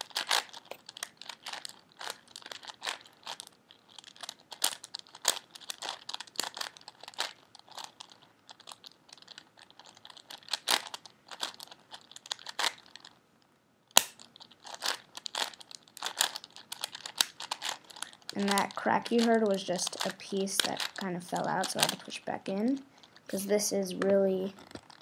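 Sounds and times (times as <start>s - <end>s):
puzzle cube layers clicking: 0.0s - 13.0s, 13.9s - 25.0s
cube piece popping out: 13.9s - 16.4s.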